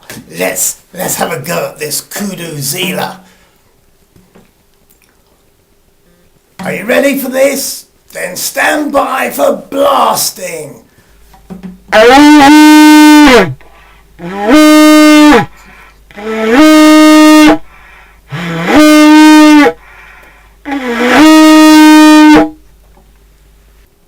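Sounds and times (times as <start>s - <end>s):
plastic horn blasts: 11.9s - 13.5s, 14.2s - 15.5s, 16.1s - 17.7s, 18.3s - 19.8s, 20.6s - 22.6s.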